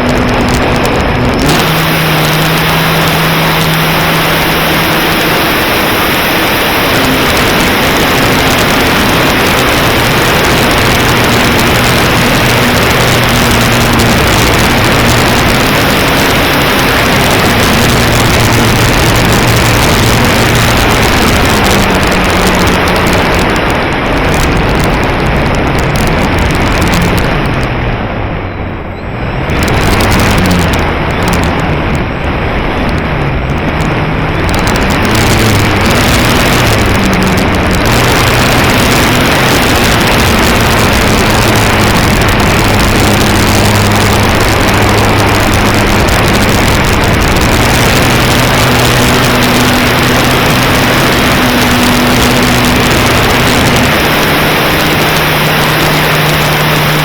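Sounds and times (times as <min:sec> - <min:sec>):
droning motor: 0:00.0 - 0:57.0
wind noise on microphone: 0:00.0 - 0:57.0.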